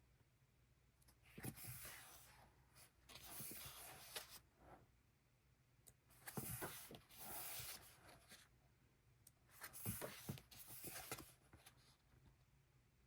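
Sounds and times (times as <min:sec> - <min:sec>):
paper pages rustling: 0:03.1 - 0:04.4, 0:06.2 - 0:08.4, 0:09.6 - 0:11.9.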